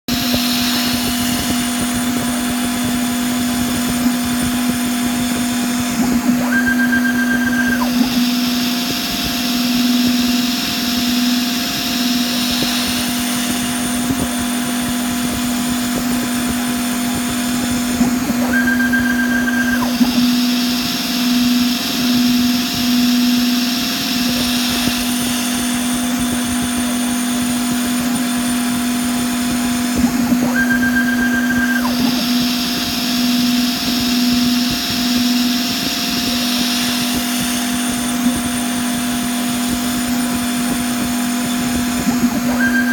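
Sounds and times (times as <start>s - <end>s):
cutting noise: 0.0s - 42.9s
milling machine spindle whine: 0.1s - 42.9s
short high-pitched tone: 3.6s - 14.7s, 17.6s - 23.7s.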